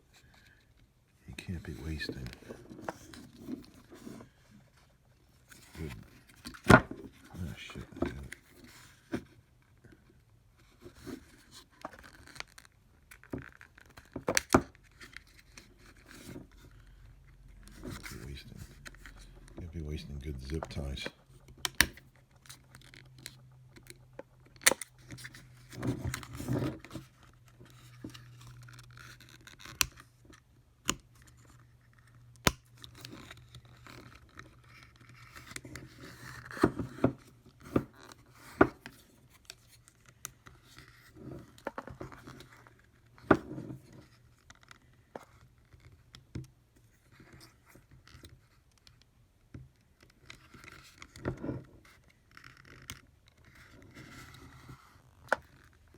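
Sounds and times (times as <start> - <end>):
plastic and cardboard rustling: 17.5 - 21.5.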